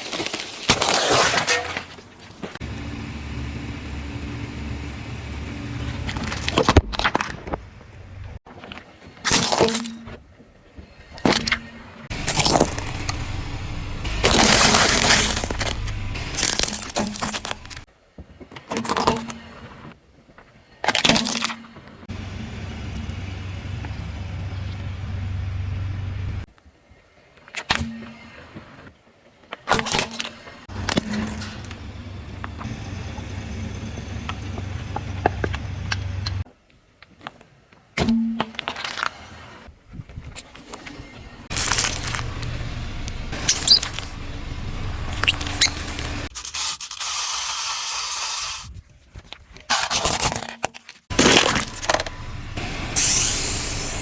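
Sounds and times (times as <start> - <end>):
tyre crushing brittle objects: 0.0 - 2.6, 12.1 - 13.4, 14.0 - 17.9, 41.5 - 44.2, 45.0 - 47.0, 49.6 - 52.2
car engine rumble: 2.0 - 6.9, 12.1 - 17.9, 22.1 - 26.5, 30.7 - 36.4, 41.5 - 46.3, 51.1 - 54.0.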